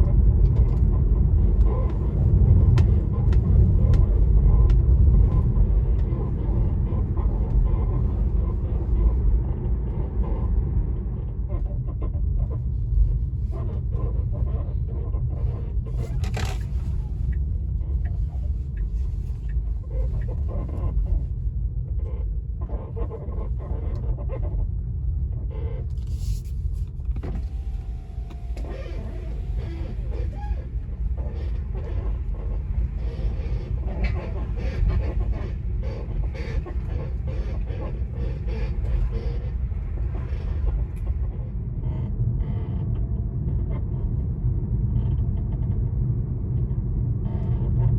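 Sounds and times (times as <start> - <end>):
low rumble: 0.0 - 47.9
suspension creaking and clicking: 15.9 - 19.6, 25.9 - 33.0.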